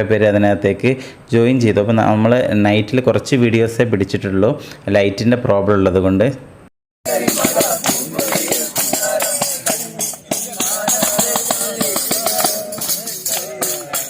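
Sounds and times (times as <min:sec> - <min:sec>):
voices singing: 0:07.0 - 0:14.0
tambourine jingling: 0:07.1 - 0:14.0.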